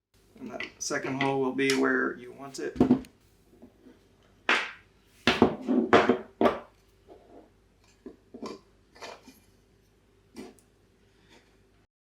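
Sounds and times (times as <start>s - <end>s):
hard objects knocking on a board: 4.5s - 6.7s.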